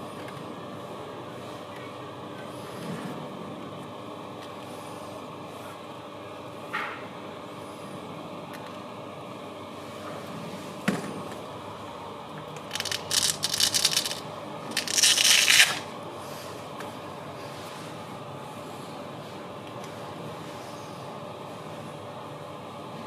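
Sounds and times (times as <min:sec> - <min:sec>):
scraping crackling noise: 0:12.7 - 0:15.8
toy car motor hum: 0:12.7 - 0:15.9.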